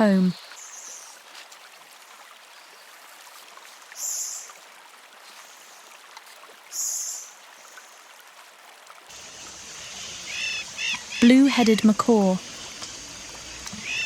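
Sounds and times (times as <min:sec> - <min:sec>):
running water trickling: 0:00.0 - 0:14.0
high-pitched hissing: 0:09.1 - 0:14.0.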